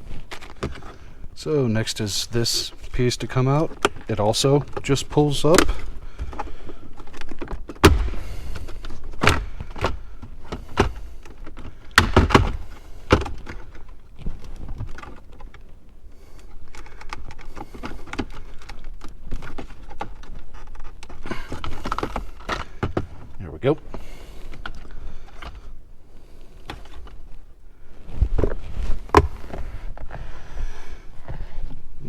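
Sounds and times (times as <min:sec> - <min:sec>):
plastic trim clicks and knocks: 0:03.7 - 0:13.8.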